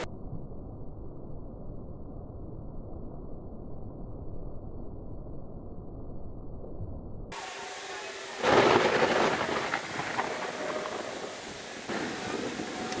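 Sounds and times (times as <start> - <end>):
rain falling: 7.3 - 13.0
thunder: 8.4 - 13.0.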